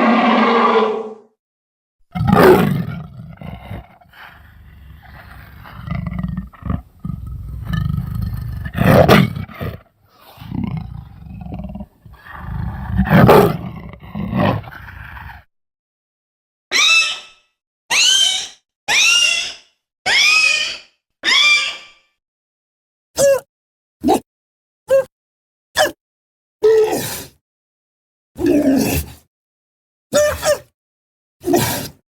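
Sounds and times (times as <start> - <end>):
low rumbling growls: 0.0 - 1.2, 2.2 - 15.5
creature roaring: 0.0 - 1.3, 2.2 - 9.8, 10.4 - 15.4, 28.4 - 29.1.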